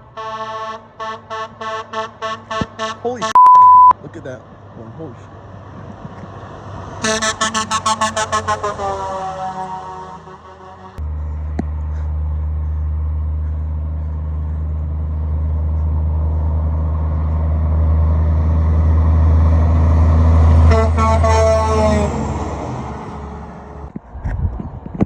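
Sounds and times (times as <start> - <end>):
truck horn: 0.0 - 3.9, 7.0 - 11.0, 20.3 - 23.9
truck engine rumble: 0.0 - 25.0.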